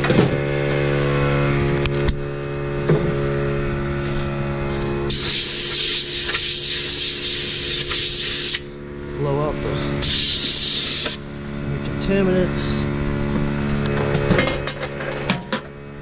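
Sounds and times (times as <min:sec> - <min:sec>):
machine hum: 0:00.0 - 0:16.0
compressed air hissing: 0:05.1 - 0:08.7, 0:10.0 - 0:11.5.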